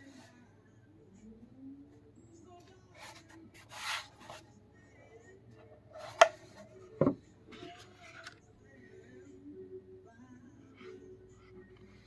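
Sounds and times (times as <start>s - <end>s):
faint background music: 0.0s - 12.0s.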